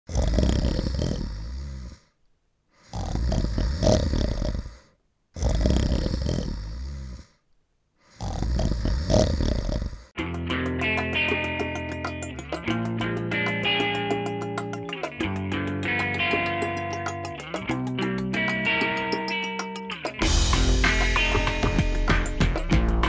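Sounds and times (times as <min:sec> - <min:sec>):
person snoring: 0:00.1 - 0:10.2
guitar music: 0:10.2 - 0:23.0.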